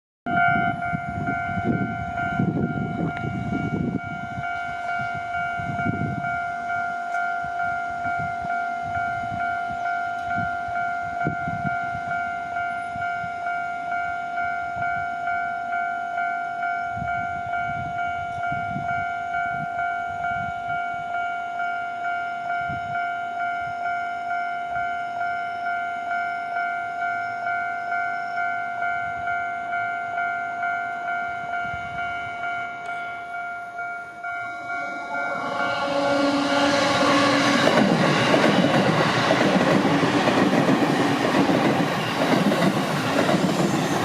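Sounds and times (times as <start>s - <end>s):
level crossing electronic bell: 28.0s - 36.1s.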